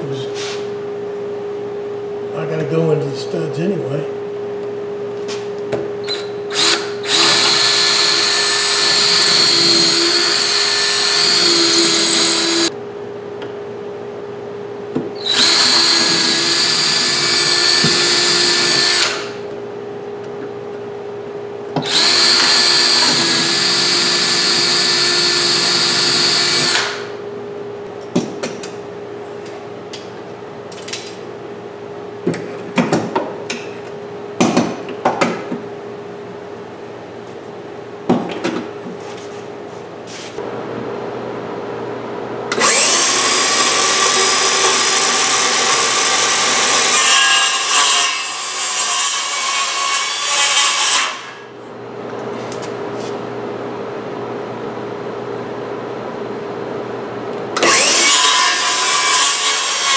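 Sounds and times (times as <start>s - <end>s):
power drill boring into wood: 6.5s - 12.7s, 15.2s - 19.3s, 21.8s - 27.0s, 42.5s - 46.9s, 57.6s - 59.0s.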